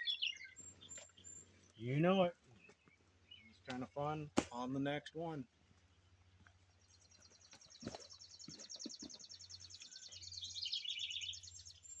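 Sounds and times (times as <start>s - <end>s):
songbird high trill: 0.0s - 1.5s, 8.2s - 12.0s
lower chirping birdsong: 0.0s - 4.4s, 5.5s - 12.0s.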